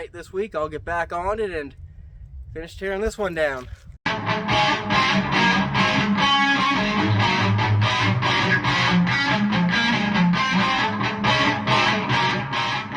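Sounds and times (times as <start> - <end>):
strummed electric guitar: 4.1 - 12.9.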